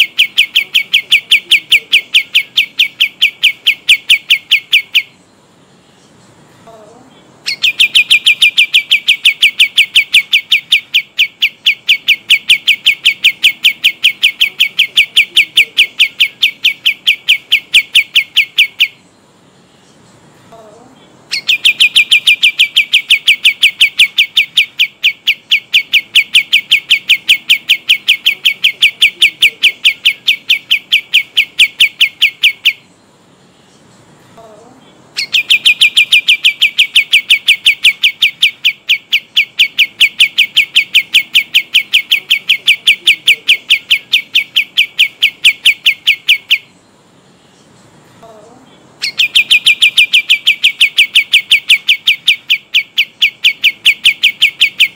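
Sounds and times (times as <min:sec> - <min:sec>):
songbird rolling trill: 0:06.7 - 0:19.0, 0:21.3 - 0:32.8, 0:35.2 - 0:46.7, 0:49.0 - 0:54.9.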